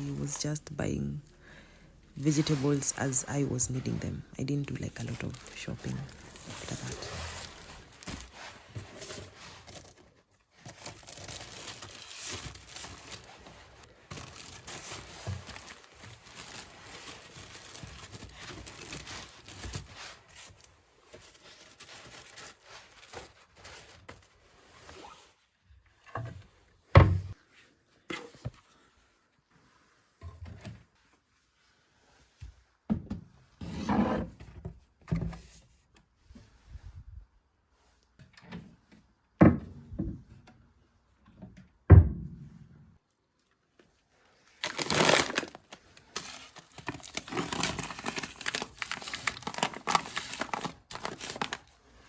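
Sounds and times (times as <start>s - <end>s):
plastic bags rustling: 0.0s - 24.4s, 44.4s - 52.0s.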